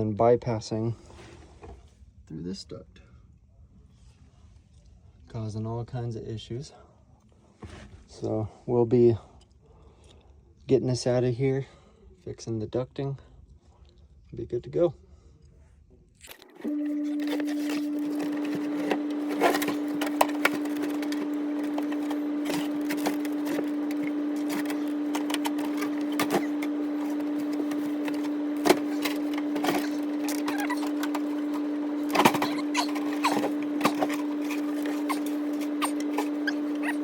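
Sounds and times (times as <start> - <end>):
steady hum: 16.4 - 37.0.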